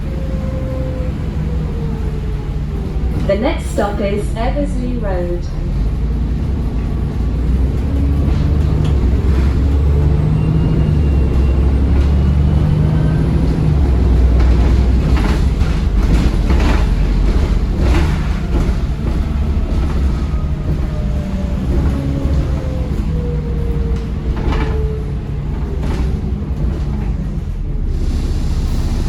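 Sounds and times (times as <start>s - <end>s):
bus diesel engine rumble: 0.0s - 29.0s
body rattles and knocks: 13.8s - 27.0s.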